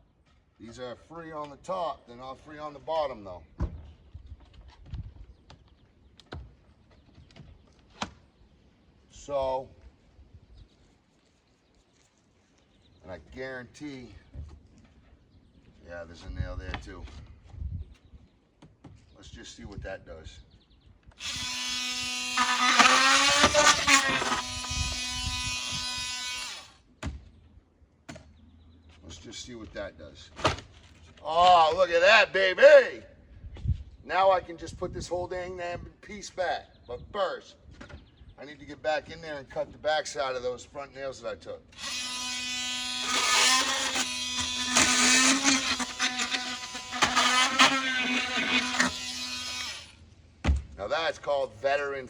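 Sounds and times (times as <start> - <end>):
blade rasping through metal nails: 21.2 - 26.8, 41.8 - 50.0
oscillating multi-tool buzzing: 21.2 - 26.8, 41.8 - 50.0.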